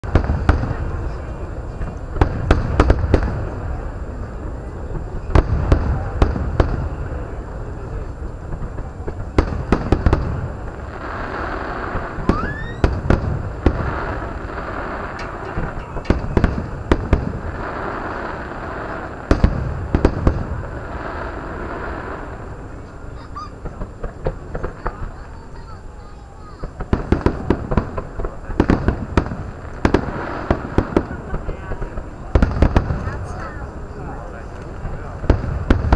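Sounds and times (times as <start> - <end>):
fireworks bursting: 0.0 - 35.9
firework rising whistle: 12.1 - 13.0.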